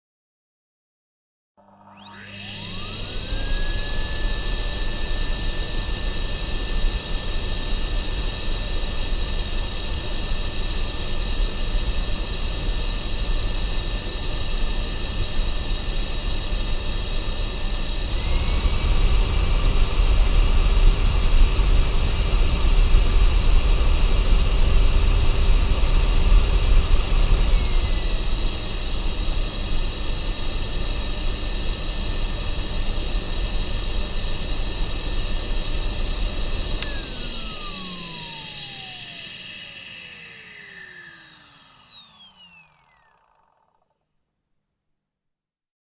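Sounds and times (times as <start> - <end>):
vacuum cleaner running: 1.6 - 44.0.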